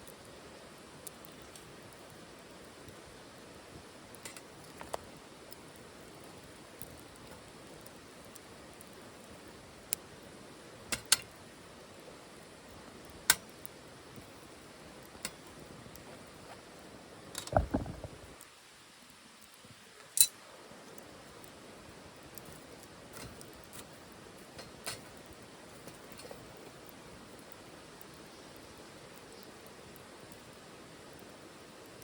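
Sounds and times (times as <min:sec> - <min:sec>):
wood fire hissing and crackling: 0:00.0 - 0:32.0
low thumps: 0:17.5 - 0:18.3.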